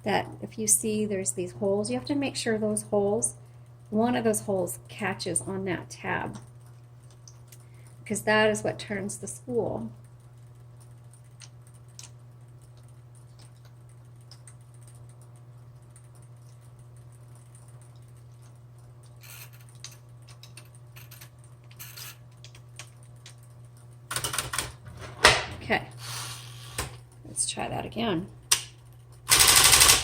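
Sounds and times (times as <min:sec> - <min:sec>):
typewriter low hum: 0:09.4 - 0:25.1, 0:28.8 - 0:30.0.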